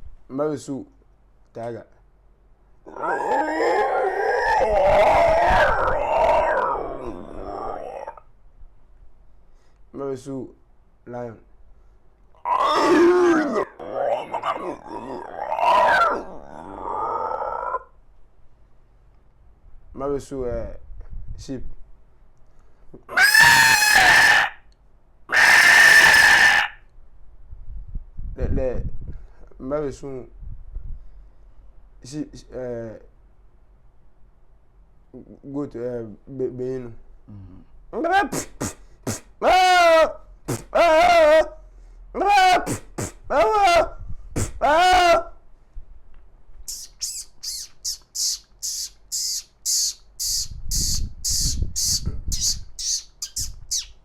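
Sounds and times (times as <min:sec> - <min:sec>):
man imitating sheep bleat: 0:37.3 - 0:41.6, 0:42.2 - 0:45.3
man imitating bird call: 0:38.1 - 0:41.4, 0:42.2 - 0:45.3, 0:46.7 - 0:54.0.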